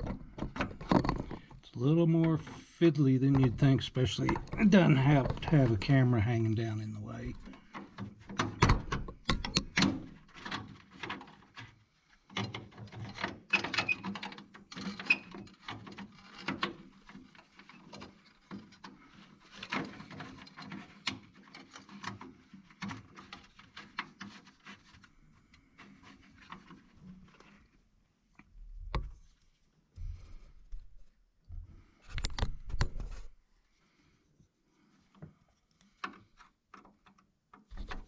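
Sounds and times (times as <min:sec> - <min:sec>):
small clicks and taps of tools: 0:32.1 - 0:33.1.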